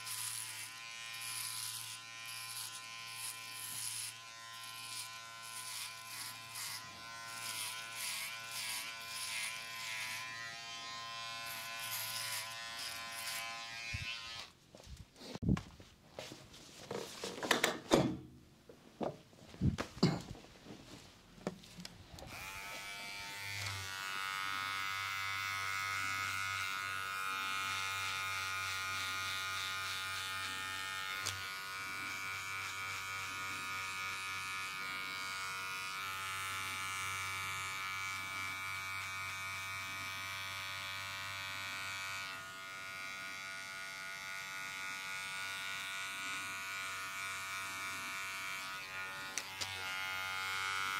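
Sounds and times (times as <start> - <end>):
electric hair clipper buzzing: 0.0 - 14.6, 22.2 - 50.9
handling knocks and scrapes: 14.7 - 22.0.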